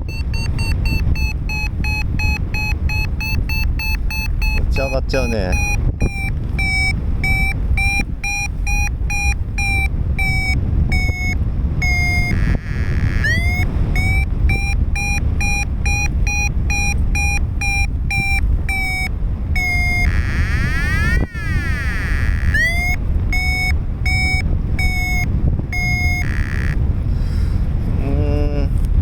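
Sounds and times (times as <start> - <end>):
variometer beeping rapidly: 0.0 - 26.9
wind noise on microphone: 0.0 - 29.0.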